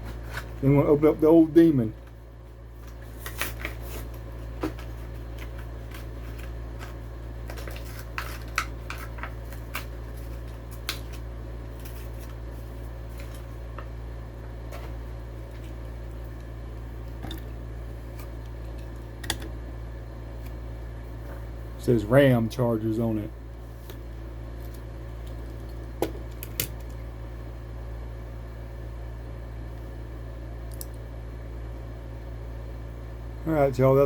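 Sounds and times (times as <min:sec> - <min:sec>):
steady low hum: 0:00.0 - 0:34.0
plastic package crinkling open: 0:04.8 - 0:12.4.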